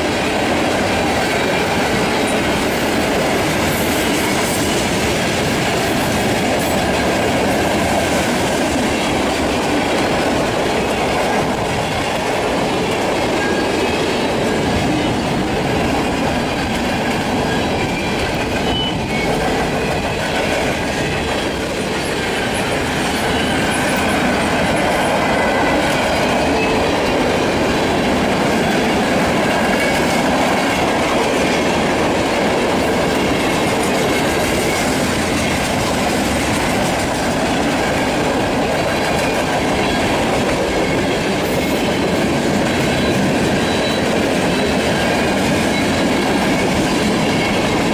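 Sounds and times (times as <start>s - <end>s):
train wheels rumbling and clattering: 0.0s - 47.9s.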